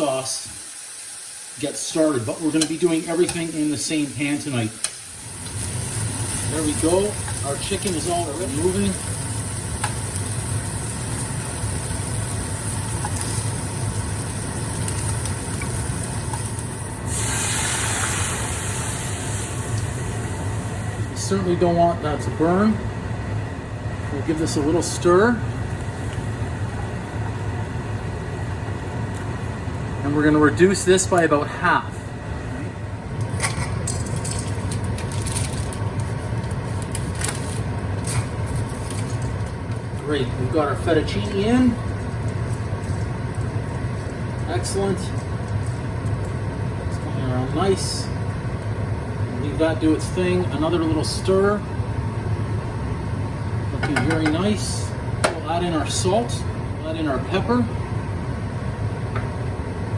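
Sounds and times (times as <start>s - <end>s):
sizzling in a hot pan: 0.0s - 21.1s
steady low hum: 1.5s - 59.9s
crackles and scrapes: 33.2s - 40.1s.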